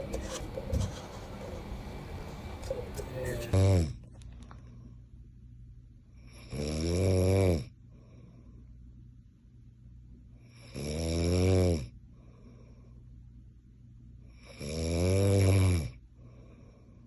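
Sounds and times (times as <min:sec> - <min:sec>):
low steady hum: 0:00.0 - 0:17.0
man snoring loudly: 0:06.5 - 0:07.7, 0:10.6 - 0:11.9, 0:14.5 - 0:15.9.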